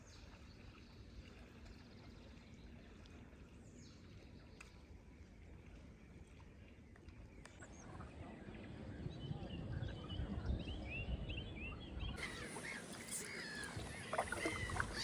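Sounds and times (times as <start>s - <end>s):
faint high chirps: 12.2s - 15.0s.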